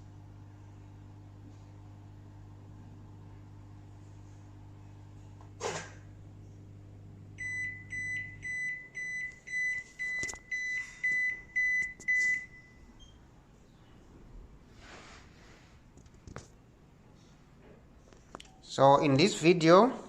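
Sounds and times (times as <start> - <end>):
low pump hum: 0.0 - 14.7
washing machine beeping: 7.2 - 13.4.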